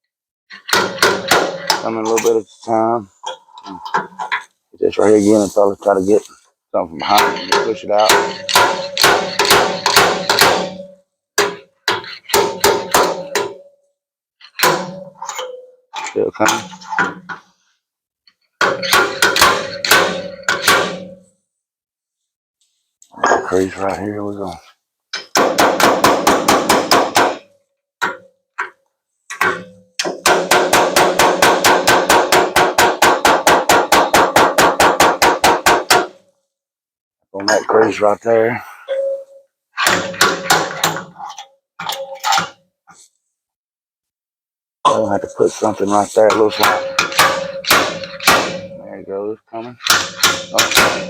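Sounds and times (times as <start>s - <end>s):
hammer striking sheet metal: 0.5s - 2.4s, 7.0s - 13.7s, 14.4s - 15.6s, 18.6s - 21.2s, 25.2s - 36.2s, 38.9s - 41.2s, 46.2s - 48.9s, 49.8s - 51.0s
ringing steel tone: 38.8s - 39.5s.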